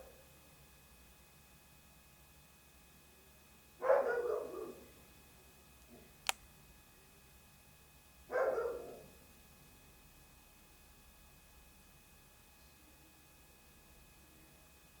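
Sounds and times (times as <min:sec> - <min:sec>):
dog barking: 0:03.8 - 0:04.9, 0:08.3 - 0:09.2.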